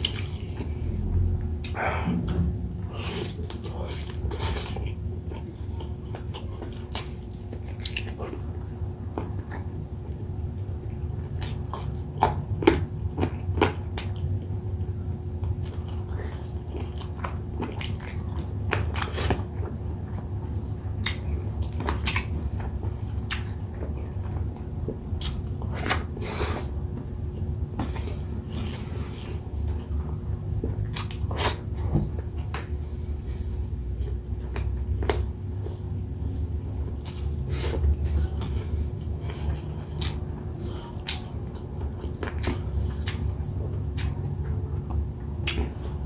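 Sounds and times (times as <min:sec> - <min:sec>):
chewing and biting food: 0:00.0 - 0:46.0
low steady hum: 0:00.0 - 0:46.0
wet mouth clicks and smacks: 0:45.4 - 0:45.8.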